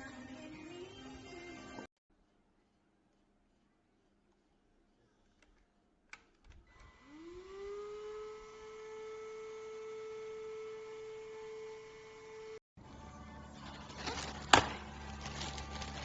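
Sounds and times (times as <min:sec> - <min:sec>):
handheld vacuum motor whine: 0:06.7 - 0:12.6.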